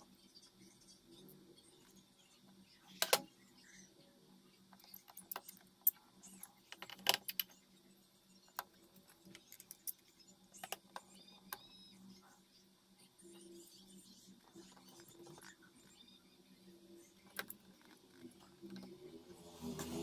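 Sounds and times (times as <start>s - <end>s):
small tools clicking and tapping: 4.7s - 7.6s, 8.5s - 11.7s.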